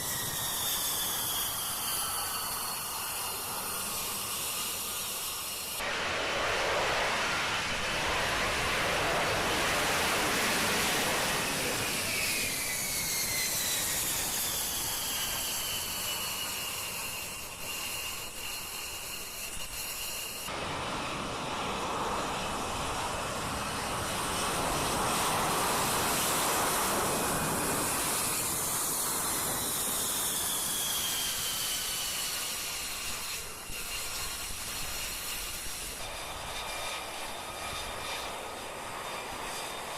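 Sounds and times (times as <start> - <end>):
jet engine roar: 0.0 - 39.9.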